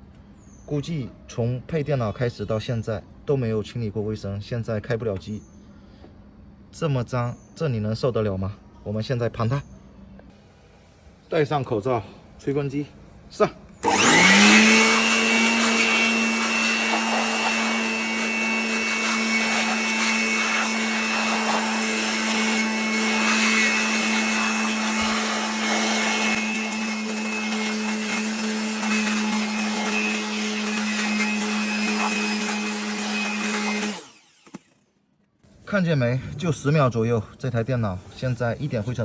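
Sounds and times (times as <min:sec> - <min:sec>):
electric blower whining: 0:13.7 - 0:35.0.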